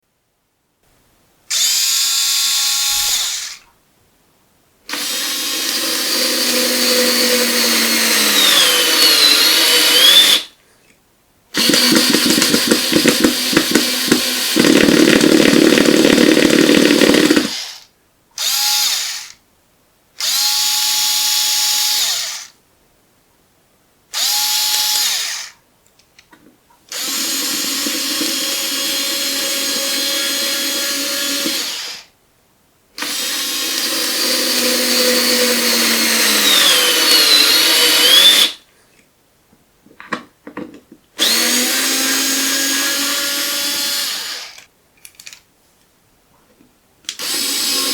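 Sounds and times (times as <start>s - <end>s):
cordless drill motor whining: 4.9s - 10.4s, 11.6s - 17.8s, 26.9s - 32.1s, 33.0s - 38.6s, 41.2s - 44.6s, 47.2s - 47.9s.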